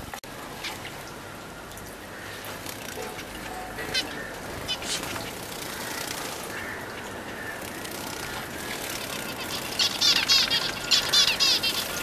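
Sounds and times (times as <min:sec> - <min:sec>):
finches chirping: 0:03.0 - 0:12.0.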